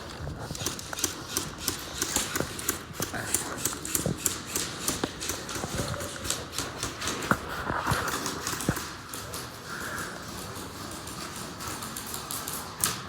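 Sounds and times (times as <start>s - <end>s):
footsteps: 4.9s - 12.6s.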